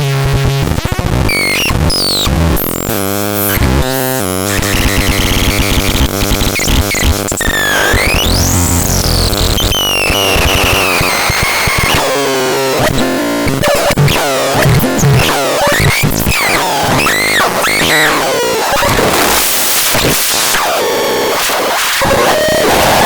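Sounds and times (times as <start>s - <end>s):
harsh buzzing synthesizer tones: 0.0s - 23.0s
high sweeping tone: 7.4s - 11.0s.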